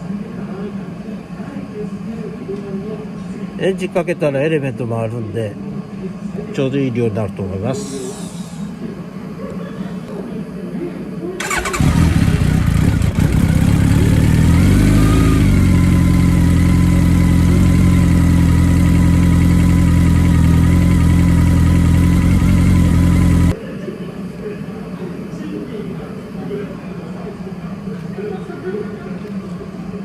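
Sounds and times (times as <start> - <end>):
motorcycle engine starting and idling: 11.4 - 23.6.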